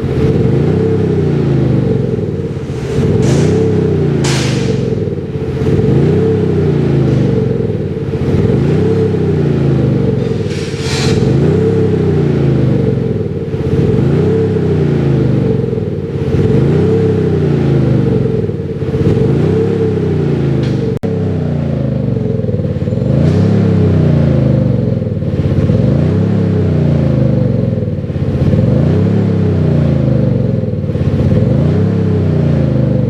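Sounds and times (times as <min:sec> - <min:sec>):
synthesized exhaust note revving: 0:00.0 - 0:33.0.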